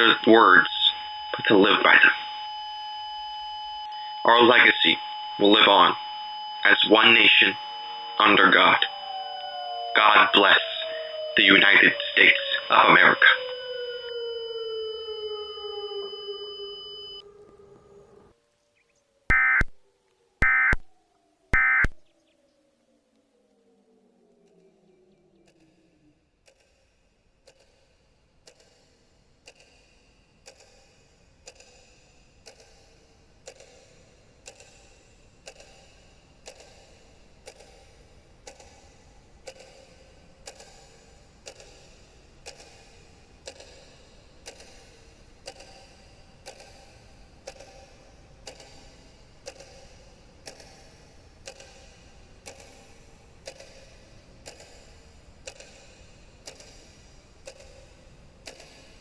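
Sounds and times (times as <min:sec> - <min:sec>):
clock ticking: 0:00.0 - 0:02.5, 0:10.0 - 0:13.6, 0:19.3 - 0:19.8, 0:27.4 - 0:59.0.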